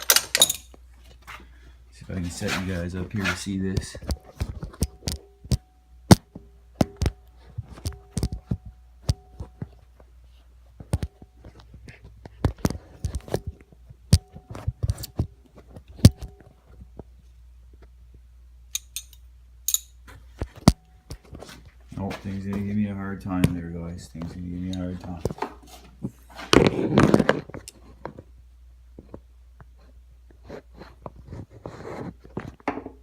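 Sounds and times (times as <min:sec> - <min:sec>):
tools and parts clicking: 0:00.0 - 0:00.8, 0:18.7 - 0:20.0.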